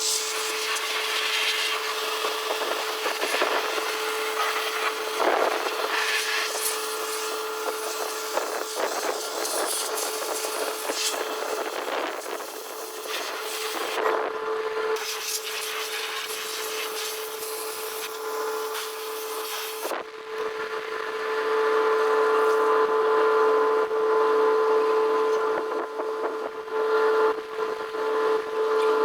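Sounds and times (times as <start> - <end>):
hissing water spray: 0.0 - 14.0, 15.0 - 19.9.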